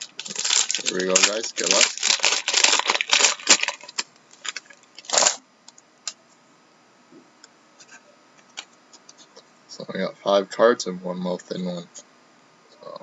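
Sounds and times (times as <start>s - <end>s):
packaging rustle: 0.0s - 5.4s.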